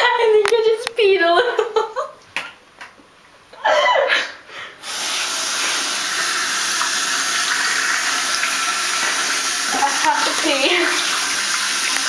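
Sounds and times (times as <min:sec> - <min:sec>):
tap water running into sink: 0:04.8 - 0:12.0.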